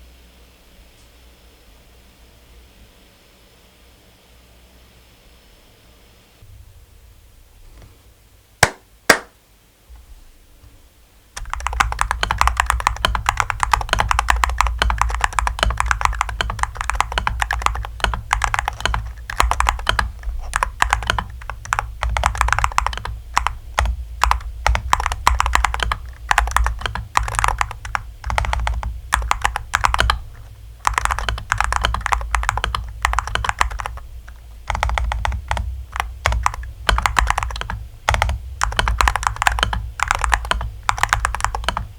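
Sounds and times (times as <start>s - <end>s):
keyboard typing: 11.4s - 41.9s.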